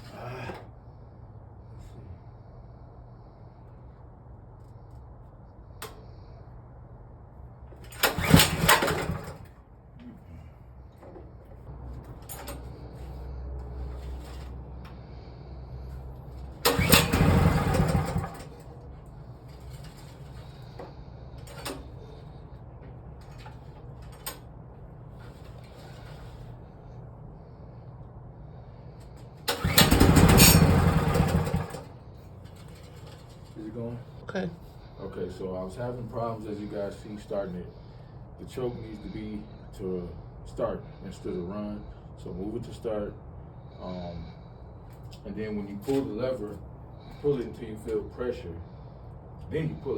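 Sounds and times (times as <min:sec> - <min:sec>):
generator engine pull-started: 0:07.8 - 0:09.6, 0:11.8 - 0:22.4, 0:25.1 - 0:27.0, 0:28.6 - 0:34.2.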